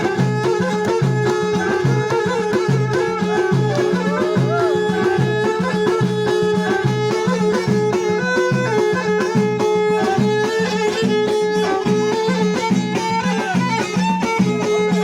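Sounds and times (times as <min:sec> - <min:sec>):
violin melody: 0:00.0 - 0:15.0.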